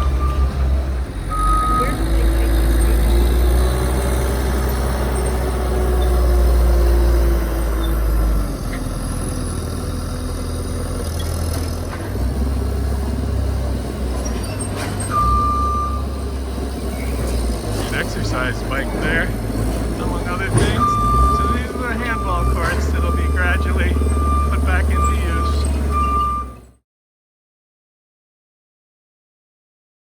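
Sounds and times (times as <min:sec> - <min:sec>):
reversing alarm beep: 0:00.0 - 0:00.6, 0:01.3 - 0:02.0, 0:15.1 - 0:16.1, 0:20.1 - 0:26.6
truck engine rumbling: 0:00.0 - 0:26.8.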